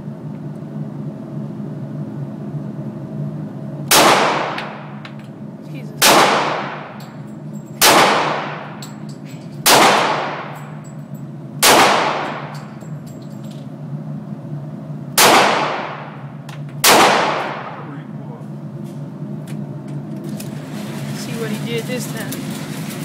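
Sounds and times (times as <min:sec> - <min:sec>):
pistol shots with echo: 0:03.9 - 0:04.9, 0:06.0 - 0:07.0, 0:07.8 - 0:08.8, 0:09.6 - 0:10.8, 0:11.6 - 0:12.6, 0:15.2 - 0:16.2, 0:16.8 - 0:17.9.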